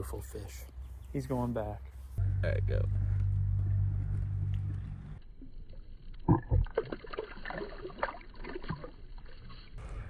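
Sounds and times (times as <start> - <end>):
water splashing and gurgling: 5.2 - 9.8.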